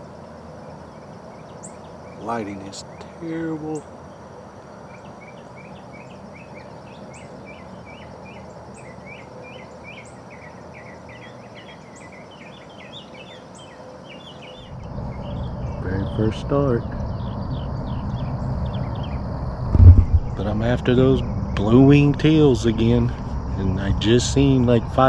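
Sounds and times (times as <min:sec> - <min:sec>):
birds chirping: 0:00.0 - 0:20.8
high insect drone: 0:00.0 - 0:25.0
low rumble: 0:14.8 - 0:24.0.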